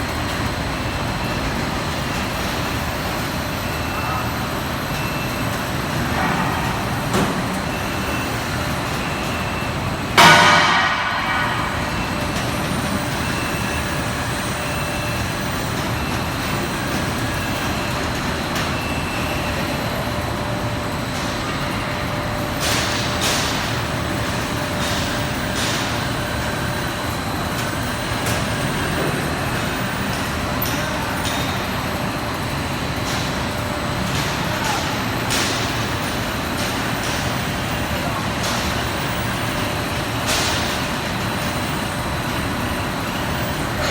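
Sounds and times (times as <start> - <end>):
industrial machinery hum: 0.0 - 43.9.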